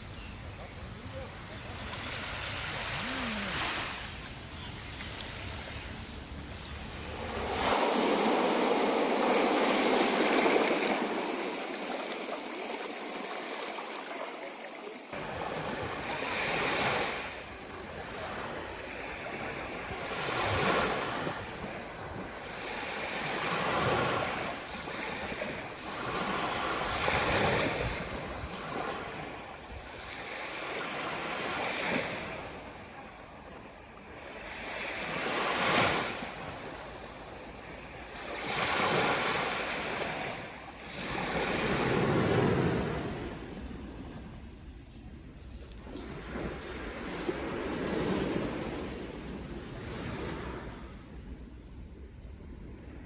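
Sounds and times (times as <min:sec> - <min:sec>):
waves breaking on shore: 0:00.0 - 0:44.4, 0:45.6 - 0:51.4
loud rush of surf: 0:07.3 - 0:13.5.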